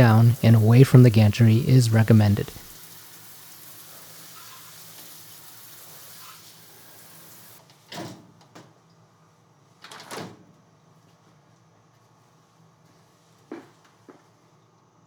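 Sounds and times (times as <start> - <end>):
spray hissing: 0.0 - 7.6.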